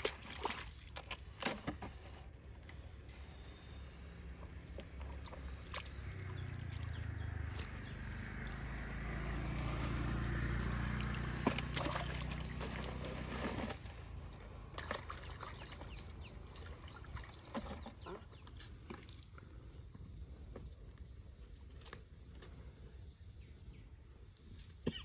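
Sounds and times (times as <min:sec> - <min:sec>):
bird chirping: 0:04.6 - 0:18.7.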